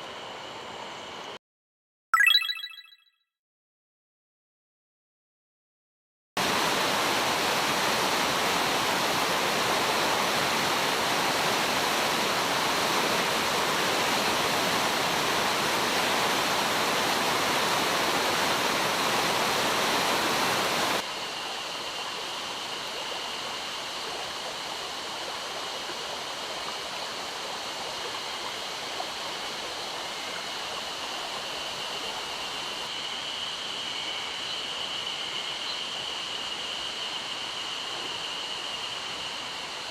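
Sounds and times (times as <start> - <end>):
stream water rushing: 6.4 - 21.0.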